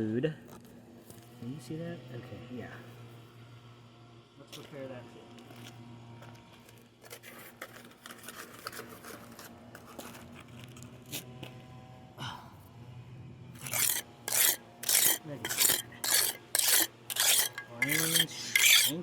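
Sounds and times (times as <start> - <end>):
scraping on fresh concrete: 4.5 - 11.6, 13.6 - 19.0.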